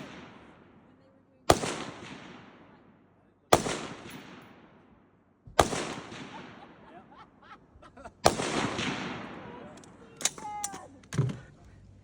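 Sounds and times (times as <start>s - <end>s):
gunshots with echo: 0.0s - 0.6s, 3.5s - 4.7s, 5.6s - 6.8s.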